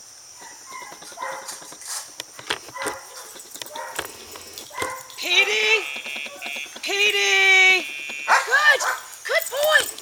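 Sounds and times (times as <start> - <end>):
insects chirring: 0.0 - 10.0
dog barking: 0.4 - 1.6, 2.7 - 4.1, 4.7 - 6.6, 8.3 - 9.1.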